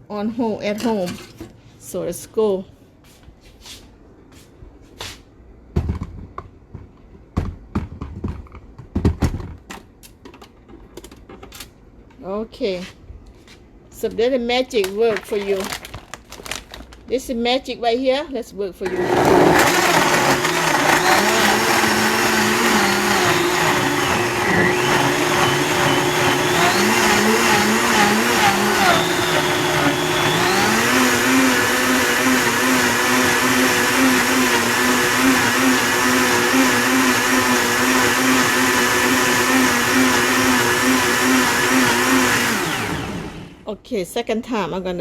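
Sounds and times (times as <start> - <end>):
blender running: 15.1 - 15.9, 18.8 - 43.6.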